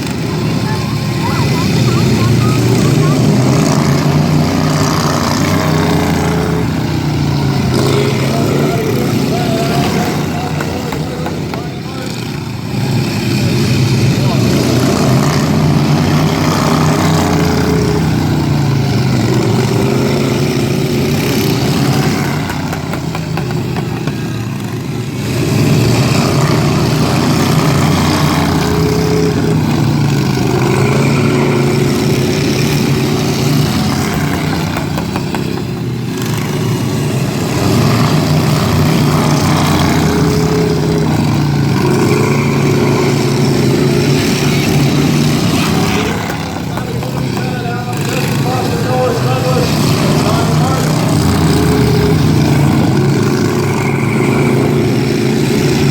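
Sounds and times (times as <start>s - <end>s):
racing lawn mower engines: 0.0s - 55.9s.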